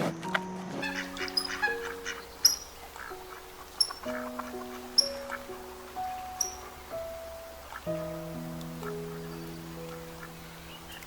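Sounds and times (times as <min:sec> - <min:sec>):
slow melody of held notes: 0:00.0 - 0:11.0.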